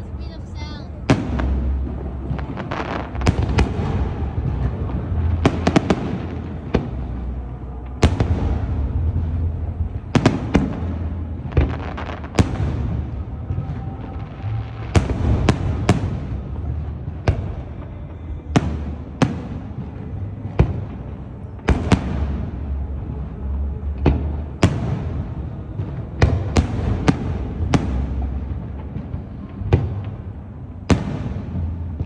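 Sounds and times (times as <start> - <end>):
fireworks bursting: 0.0 - 32.0
low rumble: 0.0 - 32.0.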